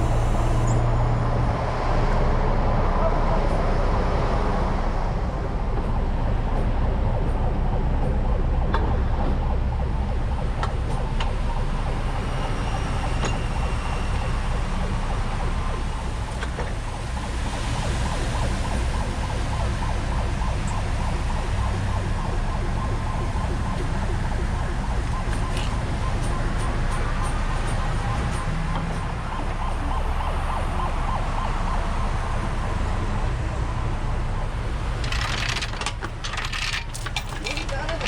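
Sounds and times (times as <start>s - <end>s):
diesel truck engine rumbling: 0.0s - 38.0s.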